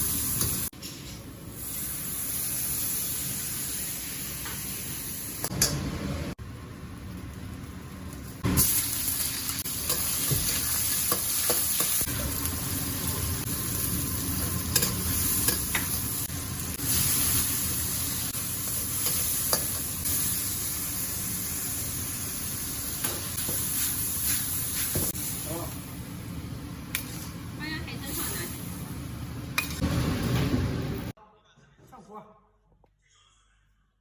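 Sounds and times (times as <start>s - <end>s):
food sizzling in hot oil: 0.0s - 0.7s, 1.5s - 5.5s, 6.5s - 25.7s.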